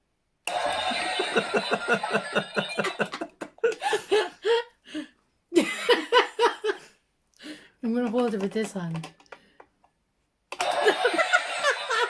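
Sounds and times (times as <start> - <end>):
person laughing: 0.9 - 4.7.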